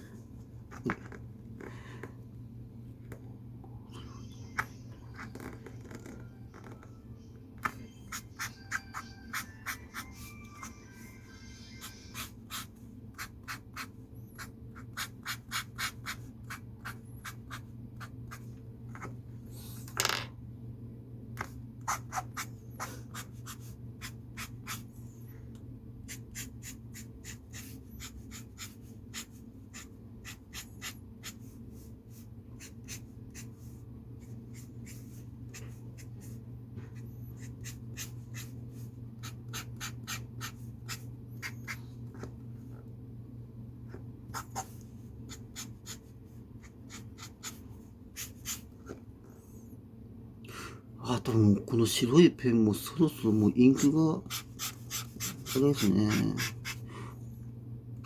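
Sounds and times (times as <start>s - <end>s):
steady low hum: 0.0s - 58.0s
pen scratching on paper: 7.6s - 10.7s, 11.8s - 19.1s, 21.8s - 24.9s, 26.1s - 42.3s, 43.9s - 49.0s, 53.6s - 56.8s.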